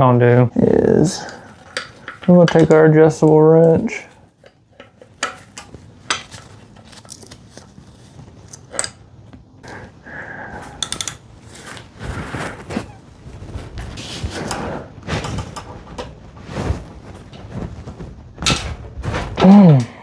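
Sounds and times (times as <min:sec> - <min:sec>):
metal hand tools clinking: 0:10.6 - 0:11.8
wrench being worked: 0:10.6 - 0:11.8.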